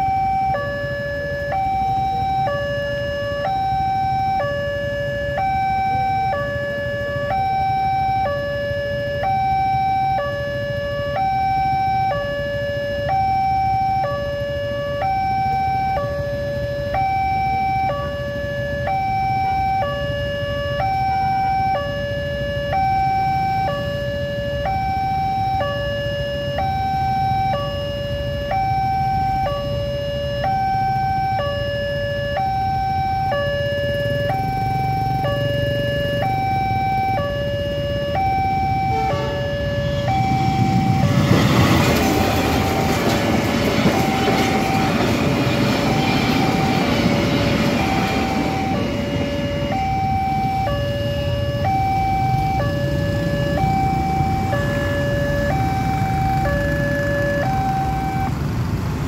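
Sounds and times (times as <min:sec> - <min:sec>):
two-tone level crossing siren: 0:00.0 - 0:58.7.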